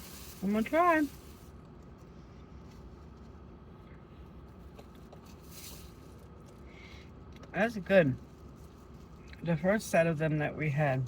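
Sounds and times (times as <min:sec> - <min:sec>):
packaging rustling: 0:00.0 - 0:01.5
low hum inside car: 0:00.0 - 0:11.0
handling rustles and ticks: 0:04.2 - 0:07.6.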